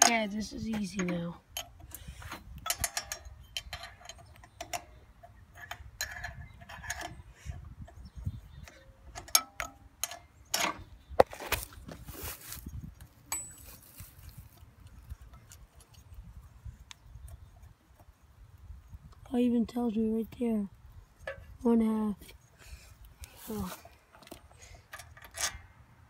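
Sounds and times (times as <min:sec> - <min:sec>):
scraping rattle: 0:00.0 - 0:07.6.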